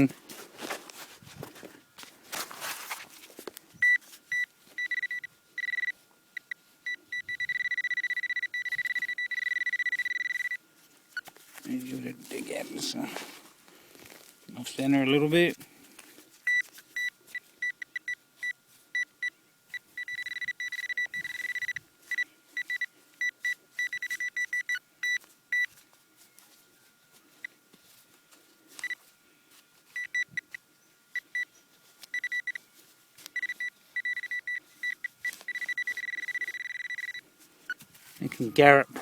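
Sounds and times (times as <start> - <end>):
metal detector probe beeping: 3.8 - 10.6, 16.4 - 25.8, 28.8 - 29.1, 29.9 - 31.5, 32.1 - 32.6, 33.3 - 38.9.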